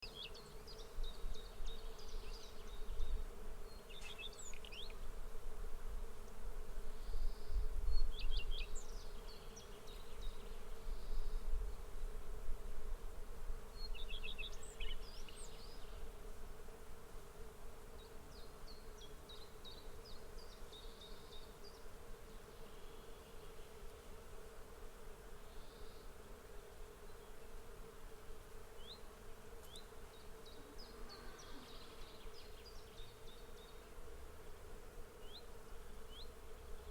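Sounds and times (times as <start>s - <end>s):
bees buzzing: 14.6s - 36.9s.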